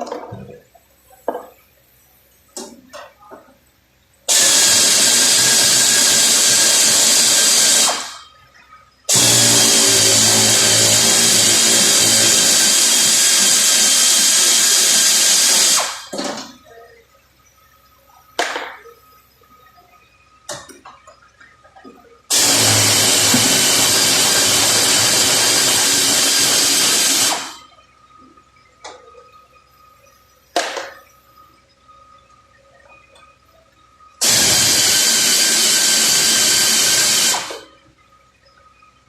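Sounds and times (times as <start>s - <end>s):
power tool running: 4.3s - 8.2s, 9.1s - 16.1s, 22.3s - 27.6s, 34.2s - 37.6s.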